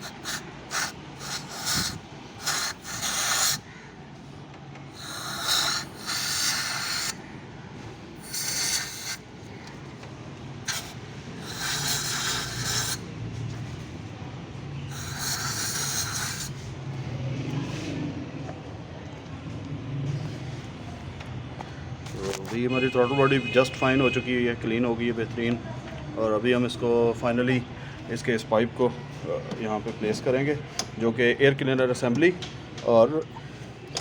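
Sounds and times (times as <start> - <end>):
aerosol spray hissing: 0.0 - 3.6, 5.0 - 7.2, 8.2 - 9.3, 10.7 - 13.0, 14.9 - 16.6
steady low hum: 0.0 - 17.2.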